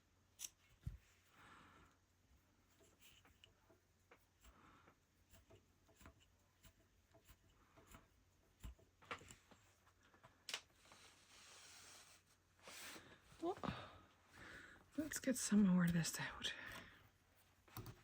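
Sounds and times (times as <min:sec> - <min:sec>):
soft rustle: 0:08.7 - 0:13.7.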